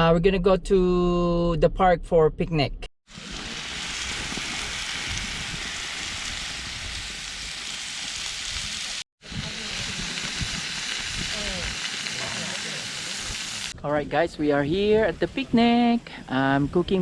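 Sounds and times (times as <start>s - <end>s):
food sizzling on a grill: 3.1s - 13.8s.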